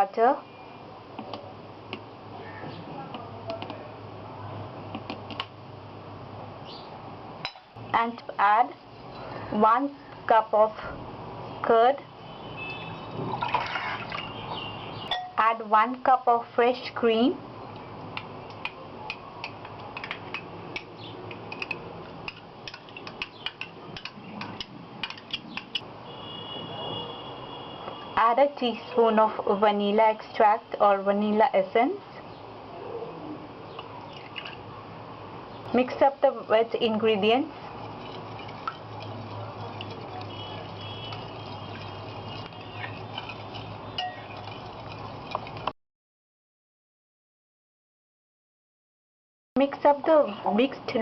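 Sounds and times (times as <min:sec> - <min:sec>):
spoon clicking against bowl: 0:18.5 - 0:25.8
spoon stirring batter in bowl: 0:18.5 - 0:25.8, 0:36.8 - 0:45.7
spoon clinking against bowl: 0:37.9 - 0:45.4.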